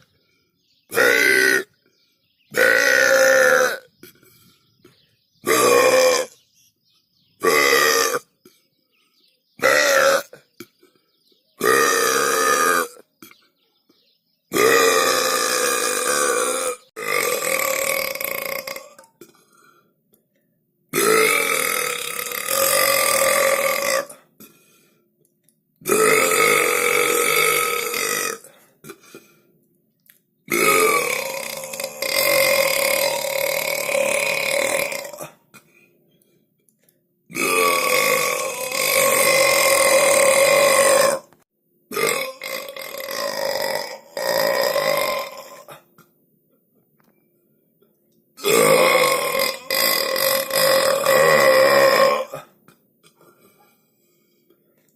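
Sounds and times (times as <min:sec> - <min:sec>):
person belching loudly: 0:00.9 - 0:01.8, 0:02.5 - 0:04.3, 0:05.4 - 0:06.4, 0:07.4 - 0:08.4, 0:09.6 - 0:10.8, 0:11.6 - 0:13.4, 0:14.5 - 0:19.5, 0:20.9 - 0:24.2, 0:25.8 - 0:29.2, 0:30.5 - 0:35.5, 0:37.3 - 0:46.1, 0:48.4 - 0:52.5.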